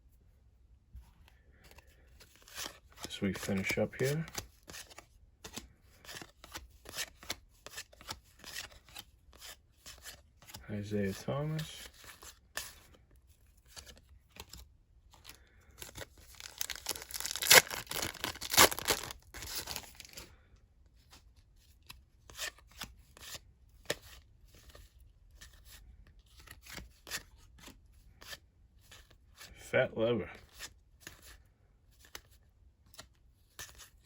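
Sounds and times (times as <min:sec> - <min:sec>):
cards clicking and rustling: 0:01.6 - 0:20.3, 0:21.0 - 0:29.5, 0:30.4 - 0:31.4, 0:32.0 - 0:34.0
card pack wrapper tearing: 0:15.7 - 0:20.2.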